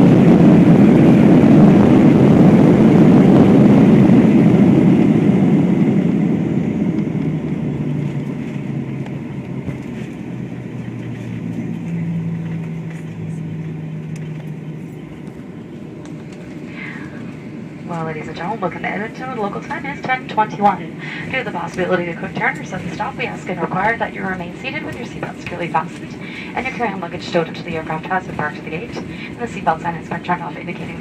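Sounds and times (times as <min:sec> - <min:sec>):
jet engines and airflow rushing: 0:00.0 - 0:31.0
low engine hum: 0:00.0 - 0:31.0.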